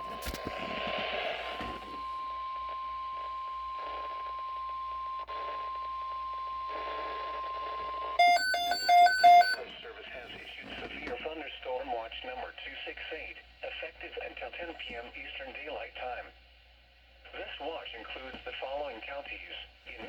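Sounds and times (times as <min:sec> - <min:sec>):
steady alarm tone: 0:08.2 - 0:09.6
radio hiss: 0:09.7 - 0:16.4, 0:17.2 - 0:20.0.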